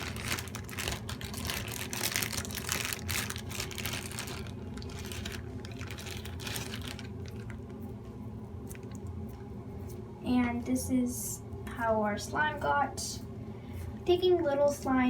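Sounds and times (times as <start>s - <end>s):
plastic bag crinkling: 0.0s - 7.9s, 8.6s - 9.0s.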